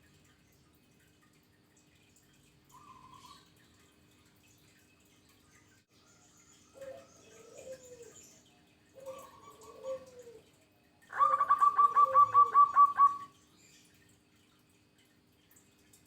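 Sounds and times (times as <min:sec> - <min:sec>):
dove cooing: 0:06.8 - 0:08.2, 0:09.0 - 0:10.5, 0:11.1 - 0:13.3.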